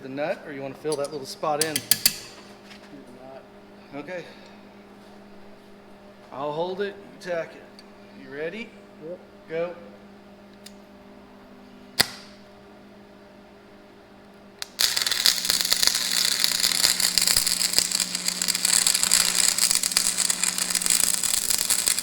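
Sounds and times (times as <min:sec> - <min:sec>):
low hum: 0:14.6 - 0:22.0
welding arc crackling: 0:14.6 - 0:22.0.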